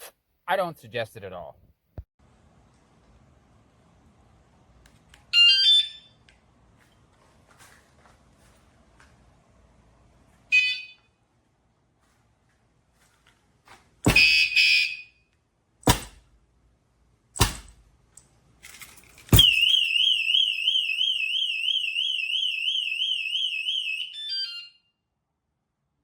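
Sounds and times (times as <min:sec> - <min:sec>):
alarm siren warbling: 0:10.5 - 0:11.0, 0:19.4 - 0:24.8
knocks on alarm: 0:14.1 - 0:14.6.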